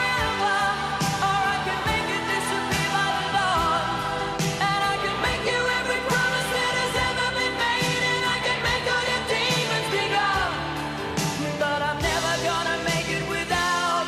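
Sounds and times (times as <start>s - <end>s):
pop music with singing: 0.0s - 14.0s.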